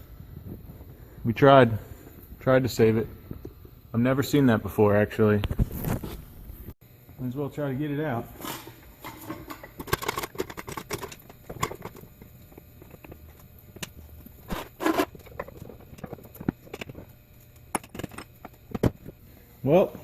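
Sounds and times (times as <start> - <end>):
metal tools clicking and scraping: 8.4 - 18.9.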